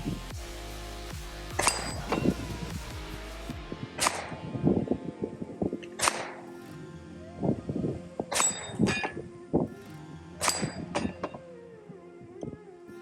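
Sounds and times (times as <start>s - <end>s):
background music: 0.0s - 13.0s
steel targets clanging: 1.6s - 2.5s, 4.0s - 4.6s, 5.8s - 6.5s, 8.2s - 9.3s, 10.4s - 11.4s.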